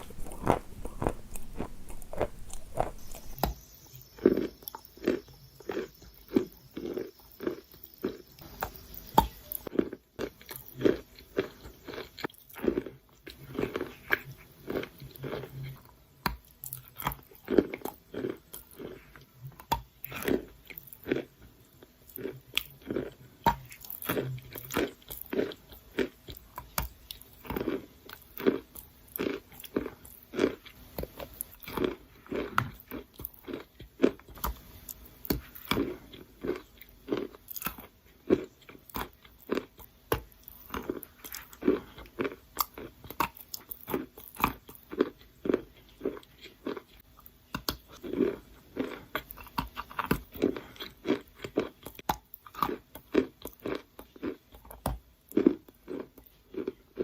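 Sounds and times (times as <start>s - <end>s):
wet sandy material crunching: 0.0s - 3.4s.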